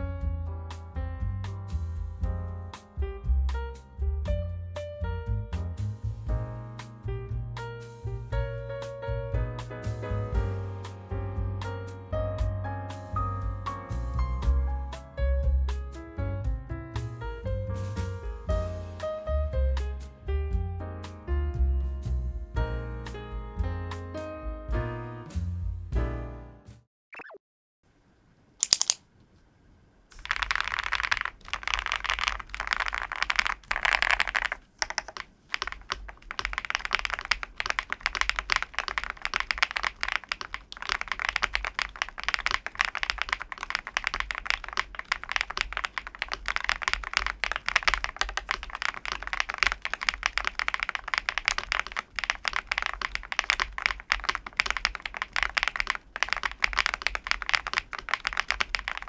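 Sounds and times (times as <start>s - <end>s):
fast mechanical keyboard typing: 28.6s - 29.0s, 30.1s - 59.0s.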